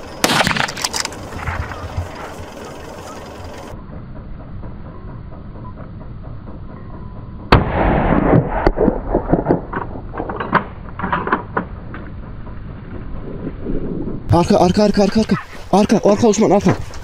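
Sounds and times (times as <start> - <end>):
gunshots: 0.2 - 1.8, 7.5 - 10.5.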